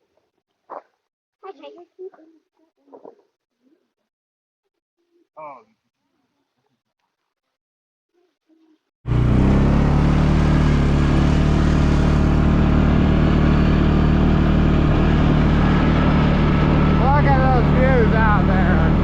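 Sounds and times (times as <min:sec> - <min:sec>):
four-wheeler engine running: 0:09.1 - 0:19.0.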